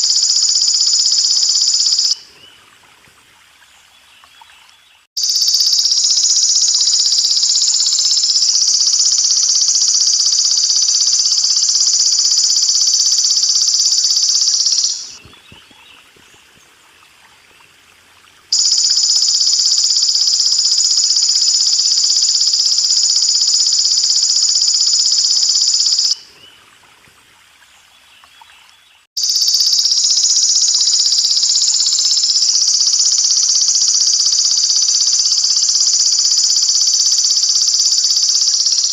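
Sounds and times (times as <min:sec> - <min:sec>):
insect buzzing trill: 0:00.0 - 0:02.2, 0:05.2 - 0:15.2, 0:18.5 - 0:26.2, 0:29.2 - 0:38.9
running water hiss: 0:00.0 - 0:38.9.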